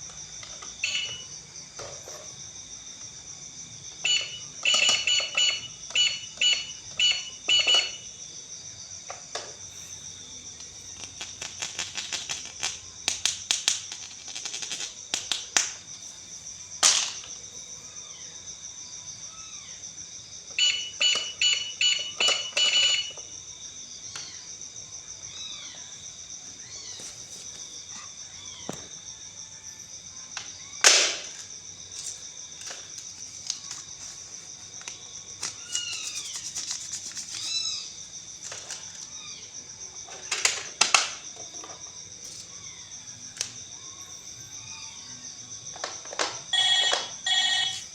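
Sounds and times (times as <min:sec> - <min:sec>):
electronic toy beeping: 0:00.7 - 0:01.4, 0:04.0 - 0:08.1, 0:20.5 - 0:23.3, 0:46.5 - 0:47.9
rapid plastic clicks: 0:11.0 - 0:15.8.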